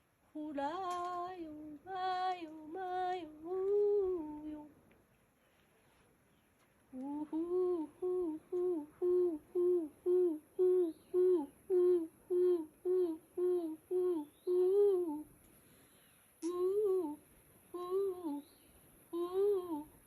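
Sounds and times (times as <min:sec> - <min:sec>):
woman chanting wordless syllables: 0:00.3 - 0:04.7, 0:06.9 - 0:15.3, 0:16.4 - 0:18.5, 0:19.1 - 0:20.0.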